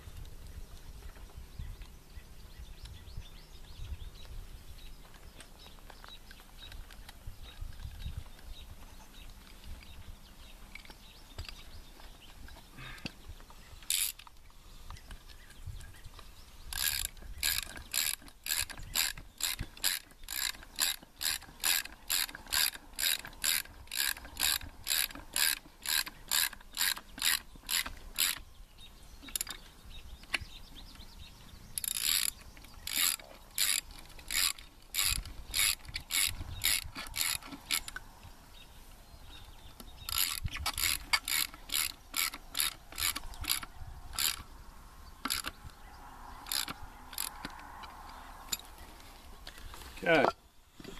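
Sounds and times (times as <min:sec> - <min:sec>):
ratchet wrench clicking: 0:13.8 - 0:14.3, 0:16.7 - 0:28.5, 0:31.8 - 0:38.0, 0:40.0 - 0:44.4, 0:45.2 - 0:45.6, 0:46.4 - 0:48.7.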